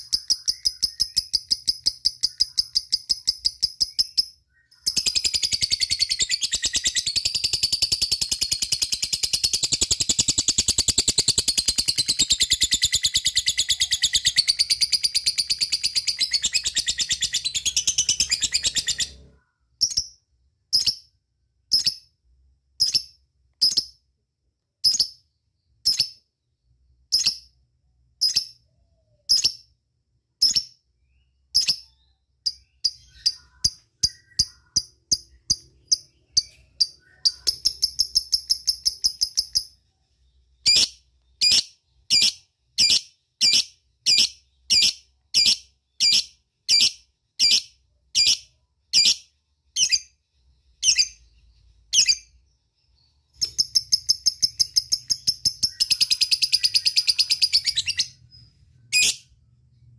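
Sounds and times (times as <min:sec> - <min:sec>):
lovebird high-pitched trill: 0:00.0 - 0:20.0, 0:53.4 - 0:59.2
lovebird sharp chirps: 0:00.0 - 0:21.1, 0:21.7 - 0:22.1, 0:22.8 - 0:24.0, 0:24.8 - 0:26.3, 0:27.1 - 0:27.6, 0:28.2 - 0:29.7, 0:30.4 - 0:59.4.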